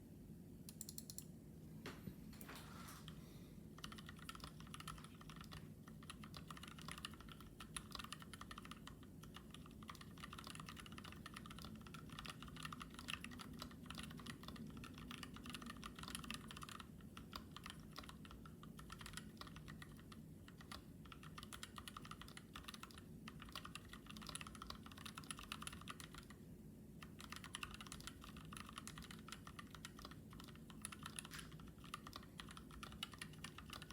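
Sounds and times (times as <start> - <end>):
mechanical keyboard typing: 0.7 - 1.3, 3.8 - 26.4, 27.0 - 33.9.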